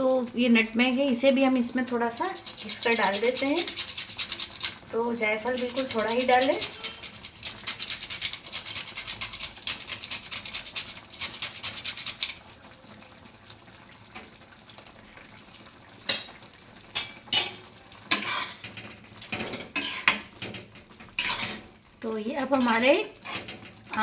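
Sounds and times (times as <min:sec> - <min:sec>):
nutmeg grating: 0:02.0 - 0:12.4, 0:22.6 - 0:24.0
spoon clinking and scraping pan: 0:02.0 - 0:12.4, 0:16.0 - 0:21.7, 0:22.4 - 0:24.0.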